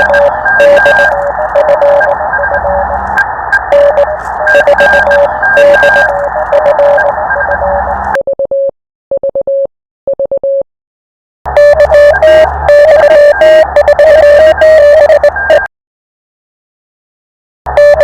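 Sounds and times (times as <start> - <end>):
radio static and hum: 0.0 - 8.2, 11.5 - 15.7, 17.7 - 18.0
morse code tone: 0.0 - 10.7, 11.5 - 15.7, 17.7 - 18.0.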